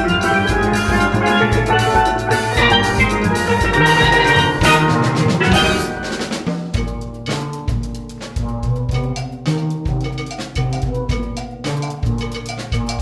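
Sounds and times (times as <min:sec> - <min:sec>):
low bass line: 0:00.0 - 0:06.4
steel pans playing melody: 0:00.0 - 0:07.2
drums keeping the beat: 0:00.0 - 0:13.0.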